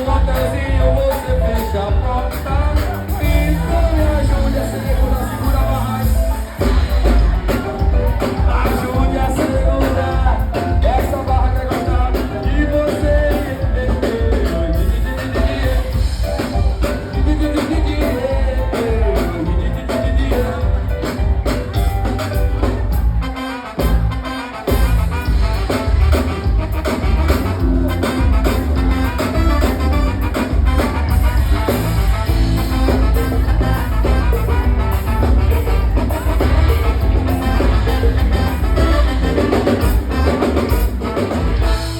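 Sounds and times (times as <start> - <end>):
person singing: 0.0 - 23.0
band playing pop music: 0.0 - 41.9
heavy bass beat: 0.0 - 41.9.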